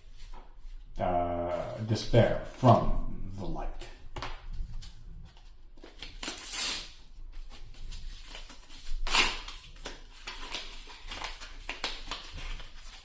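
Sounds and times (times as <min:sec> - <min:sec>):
cards rustling and sliding: 0:04.2 - 0:13.0.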